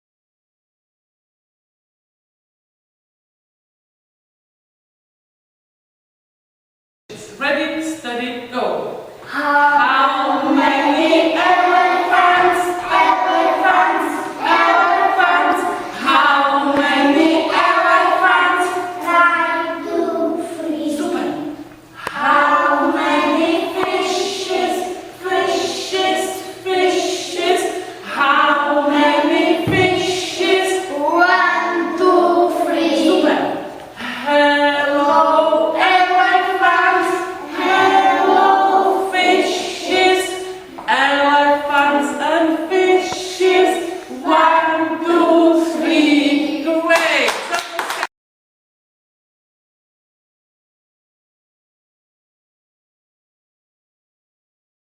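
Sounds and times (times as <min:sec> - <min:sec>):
group singing unaccompanied: 0:09.3 - 0:46.9.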